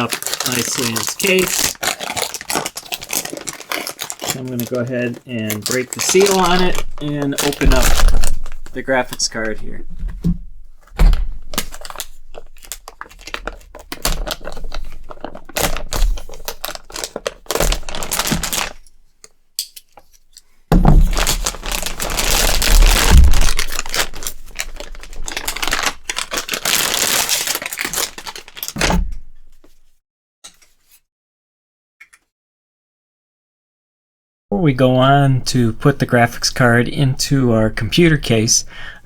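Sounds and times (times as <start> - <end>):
packaging crinkling and tearing: 0.0 - 9.7, 11.1 - 18.9, 20.8 - 28.8.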